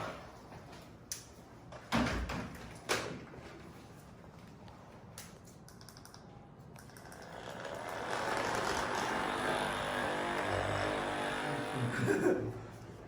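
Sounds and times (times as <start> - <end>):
small motor running: 7.1 - 12.2.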